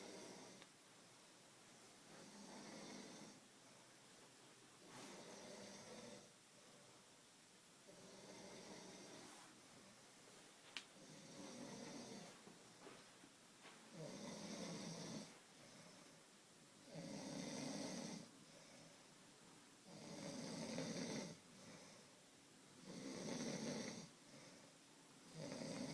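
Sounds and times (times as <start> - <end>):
person snoring: 0.0 - 0.7, 2.1 - 3.4, 4.8 - 6.4, 7.9 - 9.4, 11.0 - 12.4, 13.9 - 16.1, 16.8 - 18.8, 19.8 - 22.0, 22.8 - 24.6, 25.2 - 25.9
soft breaths: 0.0 - 25.9.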